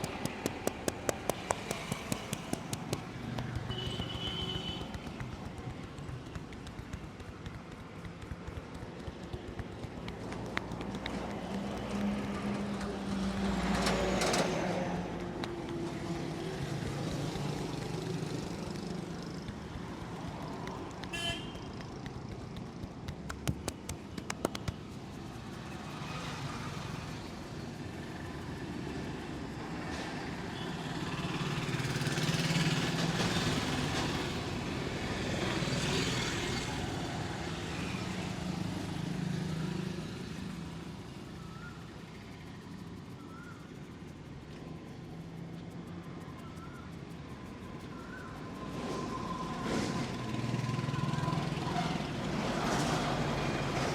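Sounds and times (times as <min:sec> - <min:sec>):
sharp clicks or taps: 0:00.0 - 0:25.5
street traffic: 0:00.0 - 0:53.9
vehicle horn tooting: 0:03.7 - 0:04.9, 0:21.1 - 0:21.6.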